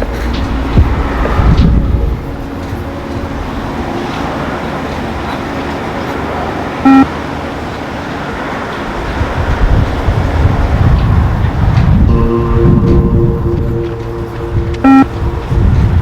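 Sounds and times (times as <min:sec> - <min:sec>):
steady background noise: 0:00.0 - 0:16.0
short electronic beep: 0:06.9 - 0:07.1, 0:12.1 - 0:15.8.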